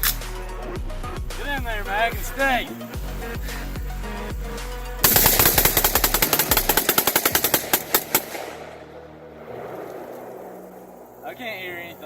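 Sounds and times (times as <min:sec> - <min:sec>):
rifles firing rapid shots: 0:05.0 - 0:08.7.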